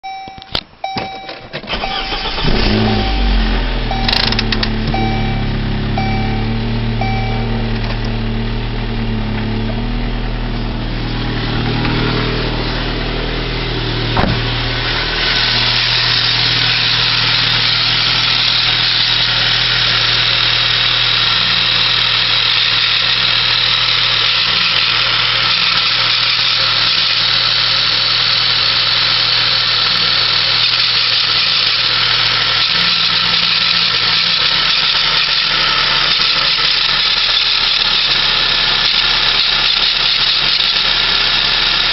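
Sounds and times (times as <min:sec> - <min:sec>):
car engine idling: 0:00.5 - 0:41.9
sharp click: 0:04.0 - 0:05.0.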